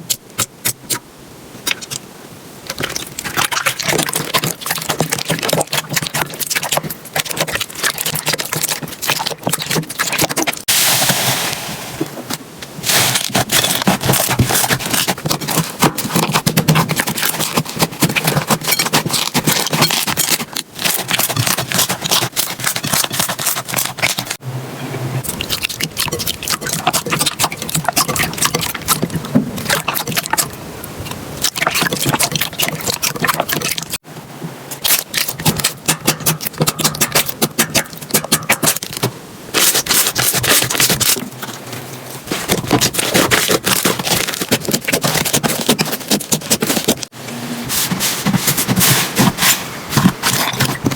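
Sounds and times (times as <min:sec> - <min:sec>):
slime crackling and popping: 0:12.8 - 0:24.4.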